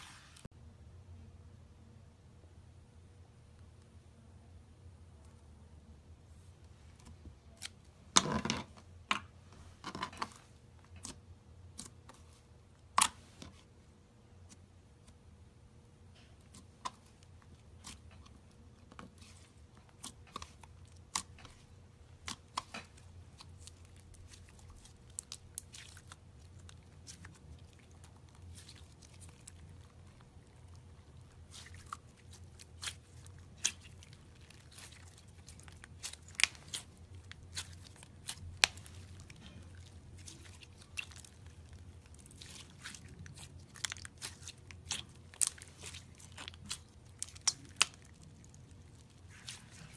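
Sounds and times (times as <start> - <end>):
slime squishing: 9.8 - 13.7, 16.1 - 49.9.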